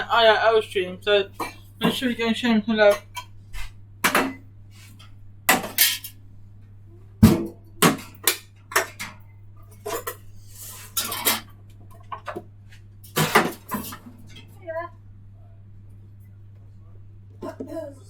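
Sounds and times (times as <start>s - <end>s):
steady low hum: 0.0s - 18.0s
dishes and cutlery clattering: 5.5s - 6.2s, 7.2s - 12.4s, 13.1s - 14.5s.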